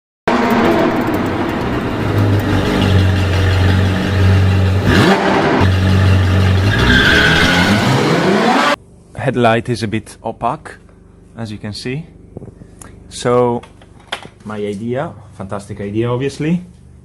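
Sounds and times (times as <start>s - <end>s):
car engine humming: 0.3s - 8.8s
engine revving: 0.3s - 8.8s.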